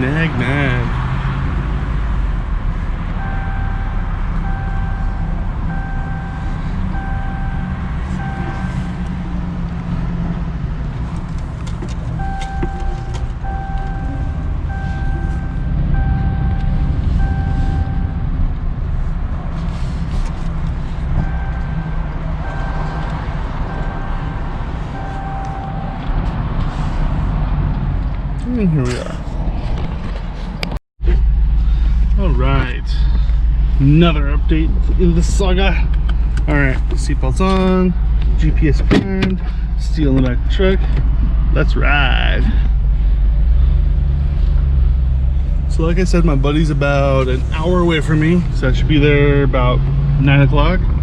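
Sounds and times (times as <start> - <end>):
truck driving rumble: 0.0 - 51.0
seatbelt warning chime beeping: 3.2 - 9.0, 12.1 - 18.3, 21.2 - 26.1.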